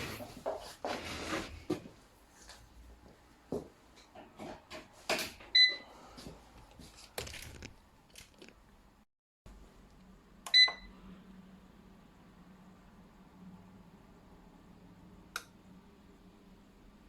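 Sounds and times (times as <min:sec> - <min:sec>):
clicks and clatter of handling: 0:07.0 - 0:08.6
pressure cooker beeping: 0:10.5 - 0:10.9.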